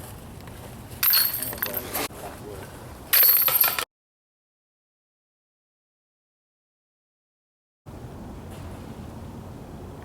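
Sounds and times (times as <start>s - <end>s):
low rumbling outdoor noise: 0.0s - 3.8s, 7.9s - 10.0s.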